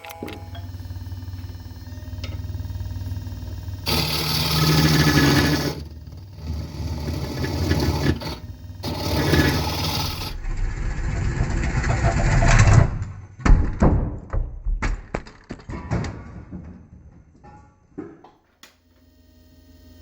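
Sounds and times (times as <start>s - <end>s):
turning tool cutting wood: 0.0s - 10.4s
wood lathe humming: 0.0s - 10.4s.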